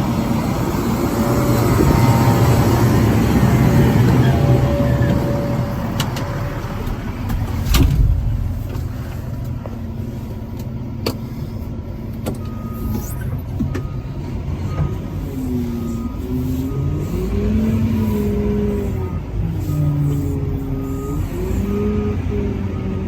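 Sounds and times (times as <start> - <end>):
diesel engine running: 0.0 - 23.0
metal clanks and knocks: 4.8 - 9.8.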